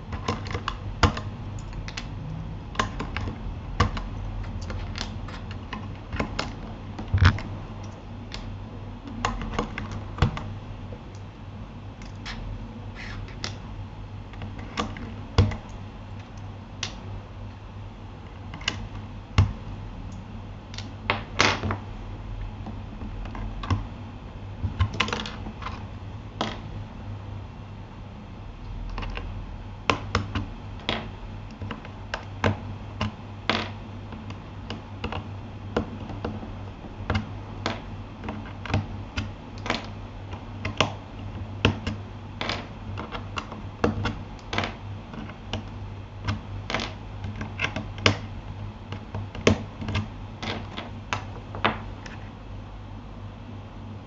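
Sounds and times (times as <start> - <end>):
steady low hum: 0.0 - 54.0.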